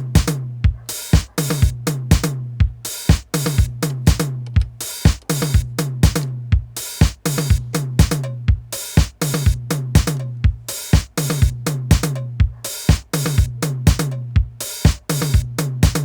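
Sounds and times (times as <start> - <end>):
cymbal and hi-hat hits: 0.0 - 16.0
drum machine beat: 0.0 - 16.0
kick drum: 0.0 - 16.0.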